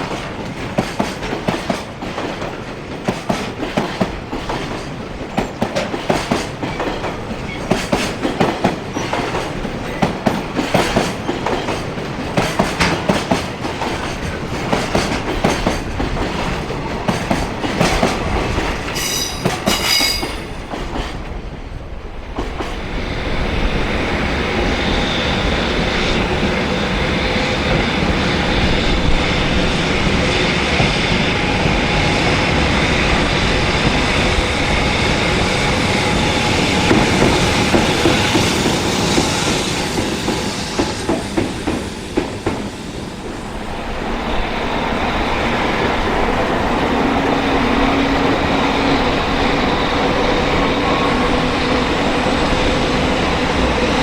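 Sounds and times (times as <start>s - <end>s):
train wheels clattering over rails: 0.0s - 21.5s, 22.2s - 54.0s
train rumble with held tones: 0.0s - 54.0s
train wheel squeal: 5.4s - 21.2s, 22.6s - 46.4s.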